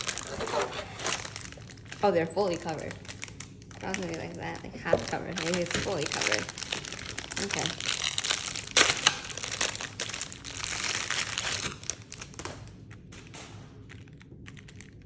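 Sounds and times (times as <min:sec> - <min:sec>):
plastic wrapper crinkling: 0:00.0 - 0:15.0.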